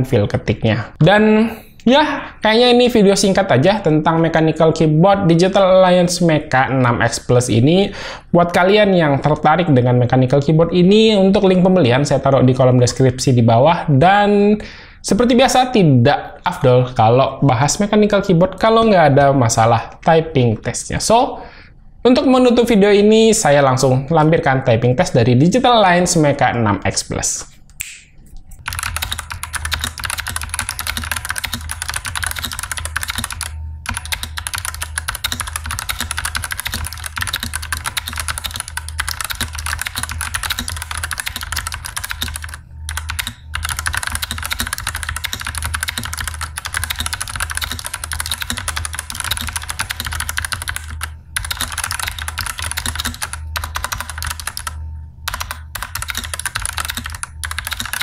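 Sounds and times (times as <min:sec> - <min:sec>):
low hum: 0:27.4 - 0:58.0
keyboard stabilizers rattling: 0:28.6 - 0:54.7, 0:55.3 - 0:58.0
fast mechanical keyboard typing: 0:28.6 - 0:58.0.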